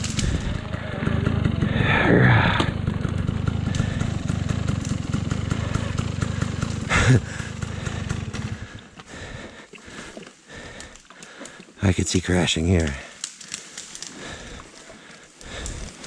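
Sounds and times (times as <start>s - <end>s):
motorcycle engine idling: 0.0s - 9.9s.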